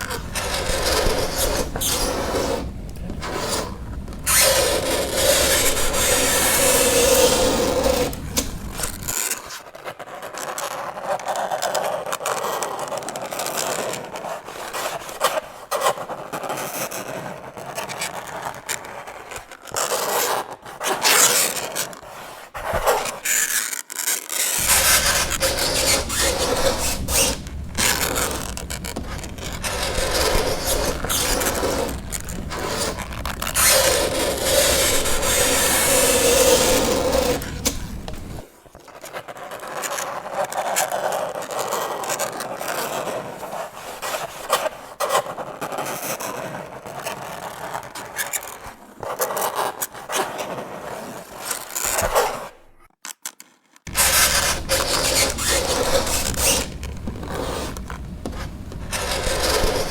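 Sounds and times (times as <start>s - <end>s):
fingernails scraping chalkboard: 0.0s - 9.2s, 19.9s - 38.5s, 53.9s - 59.9s.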